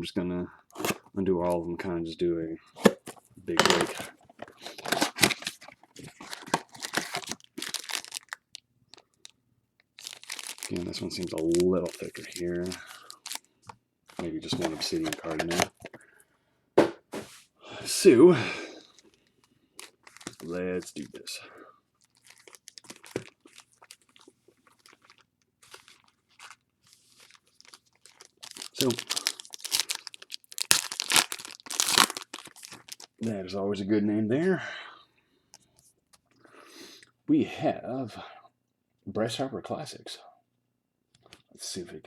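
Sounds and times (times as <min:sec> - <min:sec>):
card wrappers tearing and crinkling: 0:00.8 - 0:01.1, 0:02.8 - 0:09.3, 0:10.0 - 0:13.5, 0:14.1 - 0:15.9, 0:19.8 - 0:21.3, 0:22.0 - 0:33.2.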